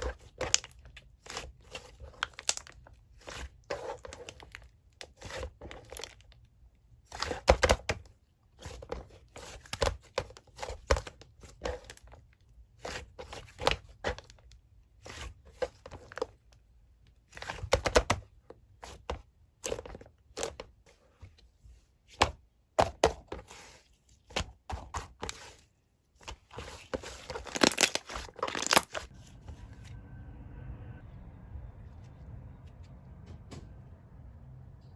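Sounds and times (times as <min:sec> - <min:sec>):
slime crackling and popping: 0:02.1 - 0:02.8, 0:27.5 - 0:29.1.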